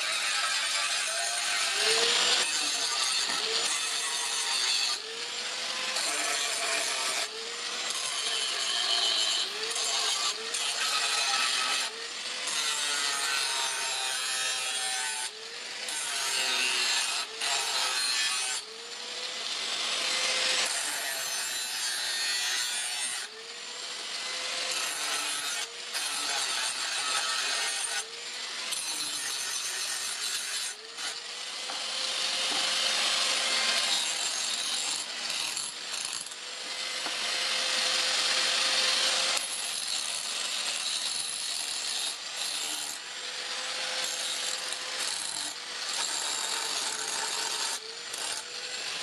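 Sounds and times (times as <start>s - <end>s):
hand tool rasping: 28.6s - 36.4s.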